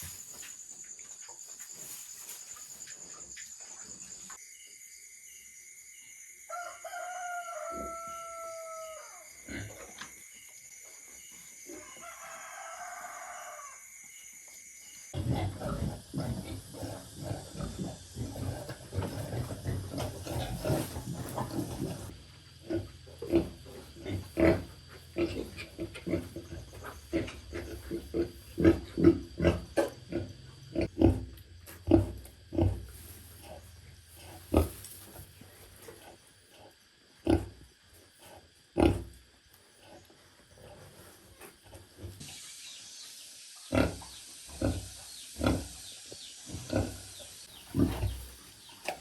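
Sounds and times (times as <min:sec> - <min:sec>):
pigs grunting: 0:15.2 - 0:34.8, 0:35.9 - 0:37.6, 0:38.2 - 0:39.2, 0:46.5 - 0:49.0.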